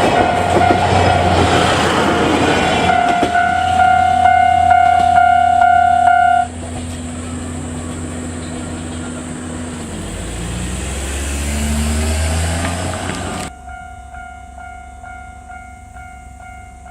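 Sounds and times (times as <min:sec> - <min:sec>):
level crossing warning signal ringing: 0:00.0 - 0:11.0, 0:12.4 - 0:16.9
engine rising in pitch: 0:00.0 - 0:15.0
steady rumble: 0:00.0 - 0:16.9.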